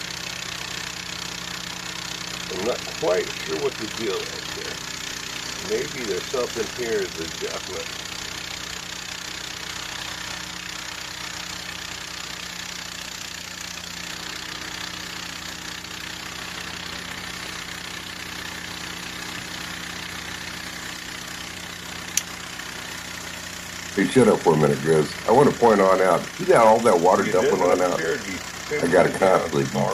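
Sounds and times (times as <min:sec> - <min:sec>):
small gas engine idling: 0:00.0 - 0:29.9
sharp click: 0:22.1 - 0:22.4.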